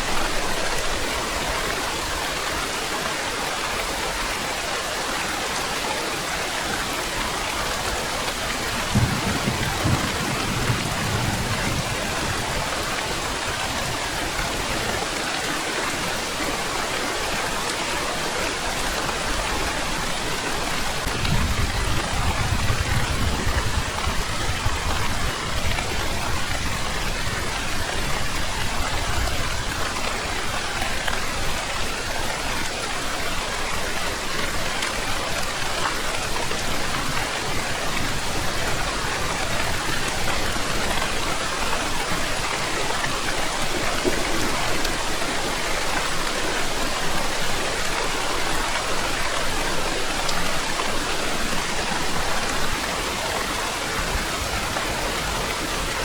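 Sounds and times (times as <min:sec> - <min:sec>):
heavy rain hissing: 0:00.0 - 0:56.0
low thunder rumbles: 0:08.6 - 0:14.7.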